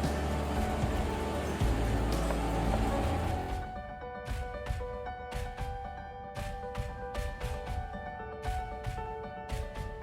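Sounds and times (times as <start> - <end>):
steady drum beat: 0.0 - 5.9.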